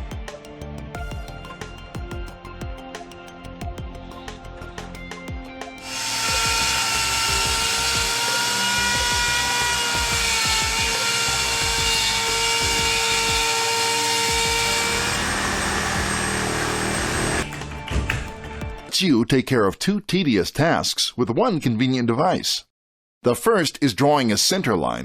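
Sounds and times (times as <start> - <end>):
background music: 0.0 - 19.4
electric power tool whining: 5.8 - 18.2.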